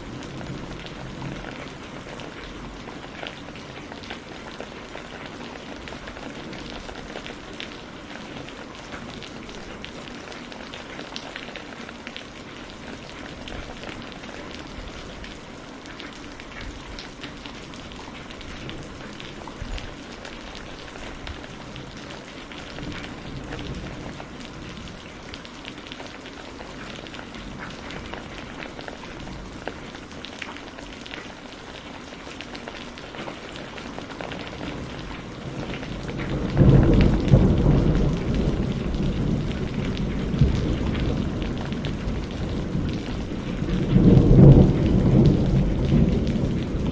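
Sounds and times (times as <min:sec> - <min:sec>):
steady rain falling: 0:00.0 - 0:46.9
deep thunderclap rumbling: 0:34.2 - 0:46.9.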